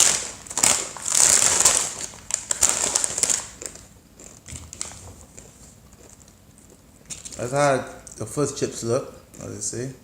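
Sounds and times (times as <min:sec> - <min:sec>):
plastic snack bag crinkling: 0:00.0 - 0:06.4.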